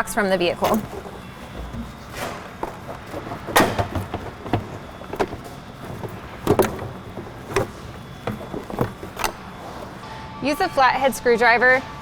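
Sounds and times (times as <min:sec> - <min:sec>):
plastic airbox knocking: 0:00.4 - 0:10.0.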